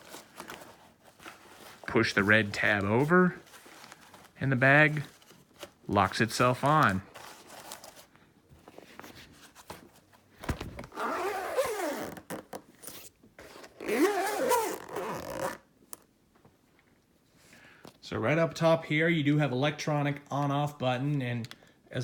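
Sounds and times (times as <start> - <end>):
zipper pulled: 10.4 - 15.7.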